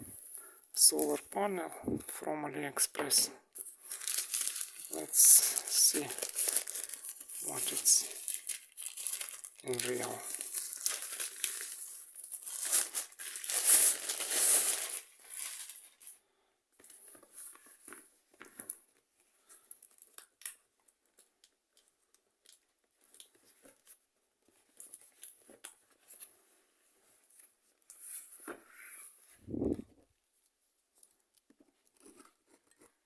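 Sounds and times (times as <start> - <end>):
plastic packaging tearing and crinkling: 3.9 - 16.1.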